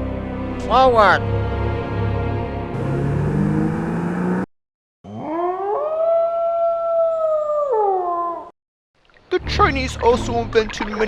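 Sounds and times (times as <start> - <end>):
long rising howl: 5.1 - 8.5.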